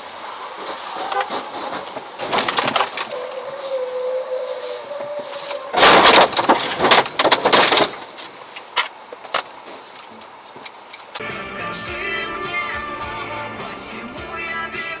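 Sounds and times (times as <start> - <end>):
steady tone: 11.2 - 15.0.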